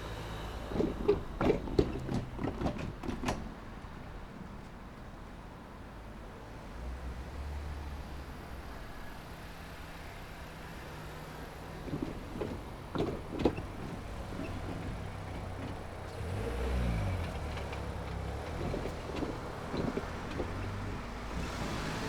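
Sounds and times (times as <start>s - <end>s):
car engine and tyres passing: 6.5s - 22.0s.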